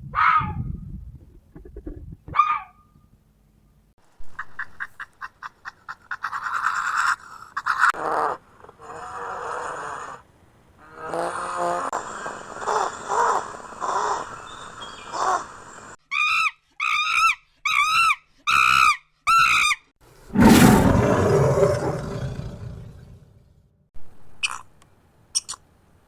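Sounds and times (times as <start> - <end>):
animal calls: 4.3 - 23.2
loud rough animal call: 20.2 - 23.4.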